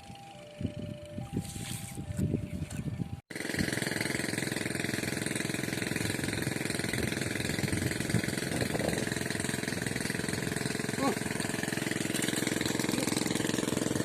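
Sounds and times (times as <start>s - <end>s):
engine-driven water pump chugging: 3.0s - 14.0s.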